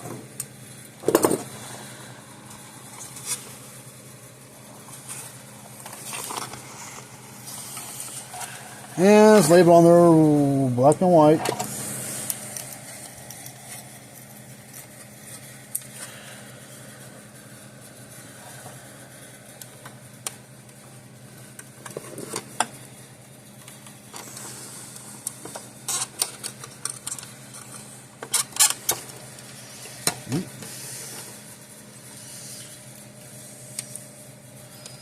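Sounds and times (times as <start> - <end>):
steady low hum: 0.0 - 35.0
clicks and rattles of wires: 25.2 - 29.2.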